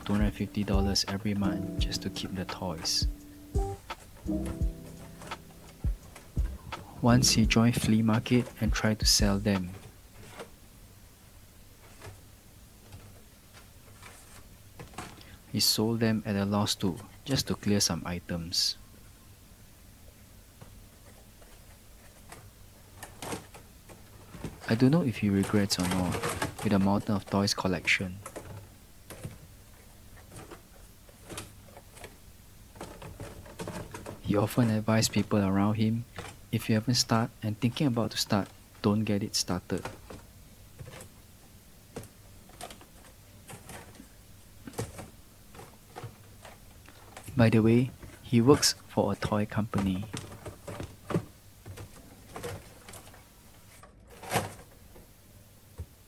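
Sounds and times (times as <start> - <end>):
steady low hum: 0.0 - 9.8.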